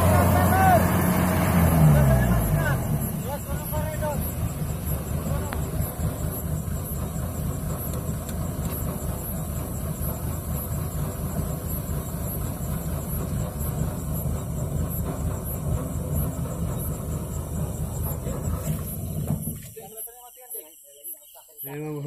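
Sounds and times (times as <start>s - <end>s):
combine harvester running: 0.0s - 19.8s
faint high ticking: 2.5s - 19.6s.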